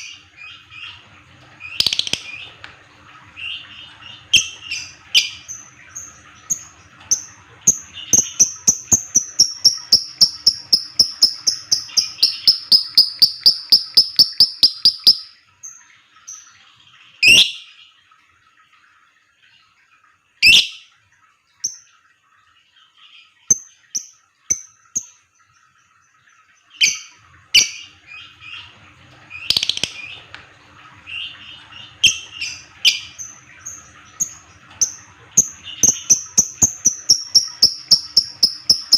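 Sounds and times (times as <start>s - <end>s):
lovebird rapid chirping: 1.7s - 2.4s, 4.3s - 15.3s, 29.4s - 30.1s, 35.7s - 38.9s.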